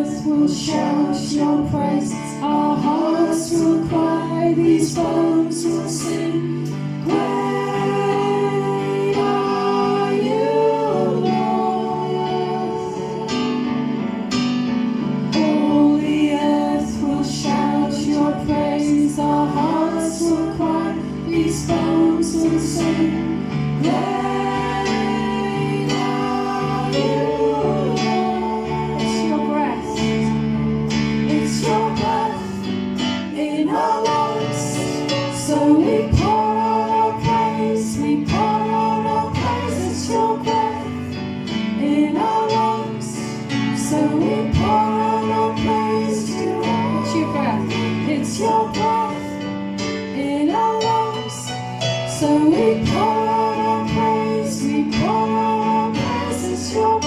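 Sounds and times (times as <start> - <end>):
woman singing: 0.0 - 10.6, 43.8 - 49.4.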